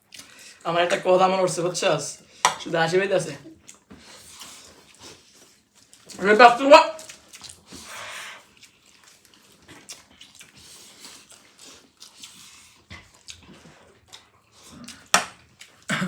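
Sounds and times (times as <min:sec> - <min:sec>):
quiet chewing: 0:00.0 - 0:00.6, 0:03.4 - 0:06.2, 0:06.9 - 0:15.9.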